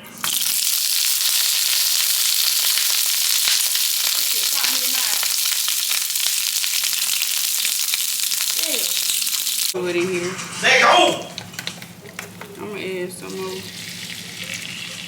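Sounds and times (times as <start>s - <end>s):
food sizzling in a pan: 0.0s - 9.8s, 13.3s - 15.0s.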